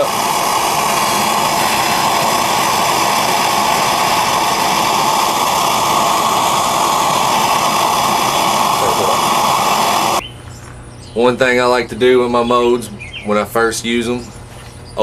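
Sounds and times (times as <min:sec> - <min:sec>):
propane torch burning: 0:00.0 - 0:10.2.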